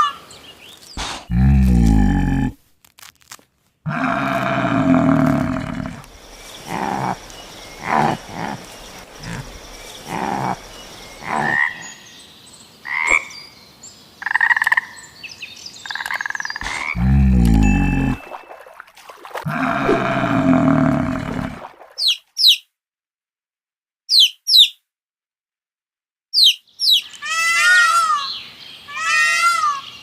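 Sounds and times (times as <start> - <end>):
deep loud animal call: 3.9 - 11.8, 16.6 - 18.3, 19.5 - 21.7
high-pitched animal calls: 3.9 - 11.8, 27.2 - 28.3, 28.9 - 29.8.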